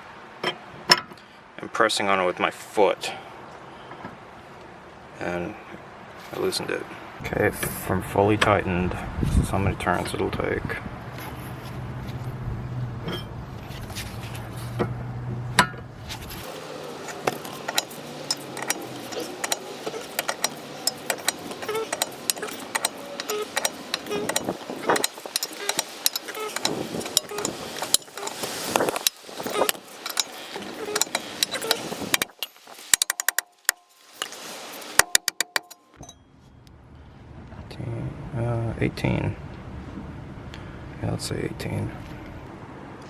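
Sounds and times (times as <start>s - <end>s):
light metallic clicks: 16.4s - 35.9s
metal scraping: 16.4s - 36.0s
short metallic ring: 16.4s - 36.3s.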